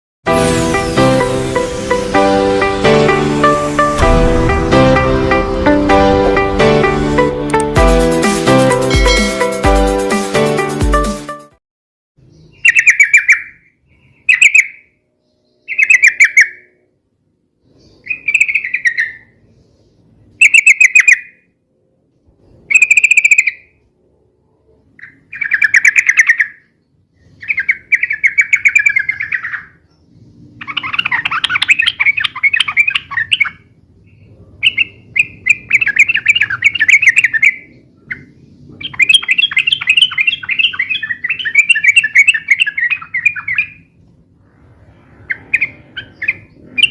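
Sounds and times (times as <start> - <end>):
bulbul chattering calls: 30.6 - 43.8.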